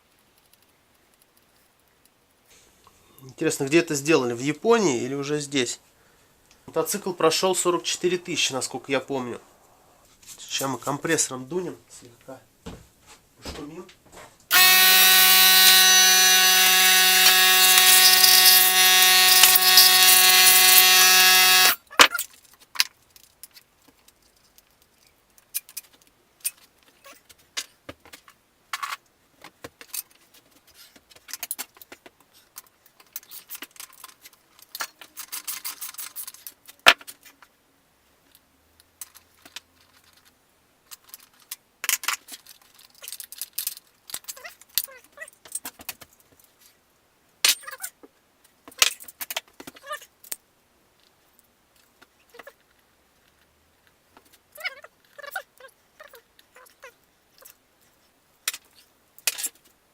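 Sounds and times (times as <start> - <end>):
air compressor running: 14.5 - 21.8
metallic clicks of tools: 14.5 - 27.0.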